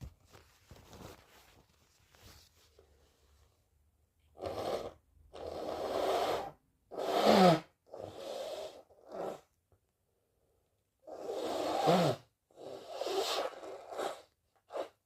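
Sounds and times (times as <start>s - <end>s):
person blowing nose: 4.3s - 9.6s, 11.1s - 15.0s.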